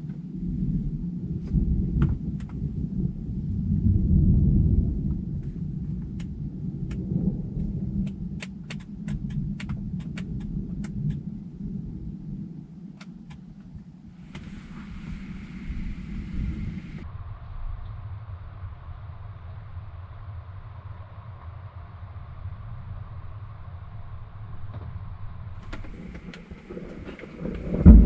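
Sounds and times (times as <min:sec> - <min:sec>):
rolling thunder: 0:00.0 - 0:28.0
sharp ticks: 0:02.3 - 0:02.7, 0:05.9 - 0:11.5, 0:12.9 - 0:16.7.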